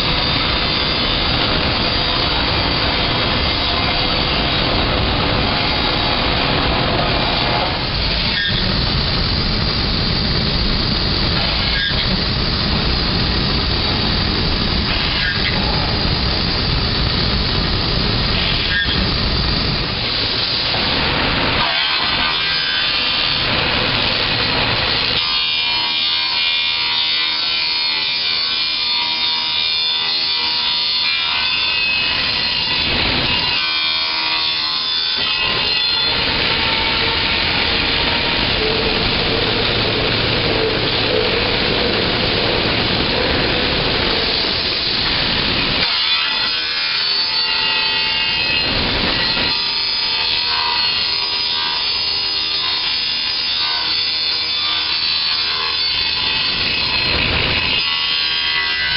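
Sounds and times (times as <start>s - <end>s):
high spindle whine: 0.0s - 58.9s
router cutting noise: 0.0s - 58.9s.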